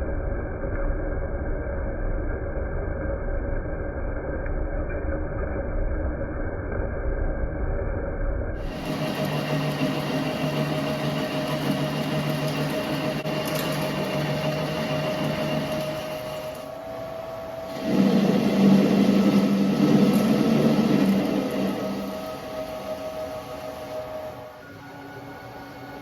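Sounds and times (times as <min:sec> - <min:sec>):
lathe tool cutting steel: 0:08.6 - 0:24.7
lathe spindle whining: 0:08.6 - 0:26.0.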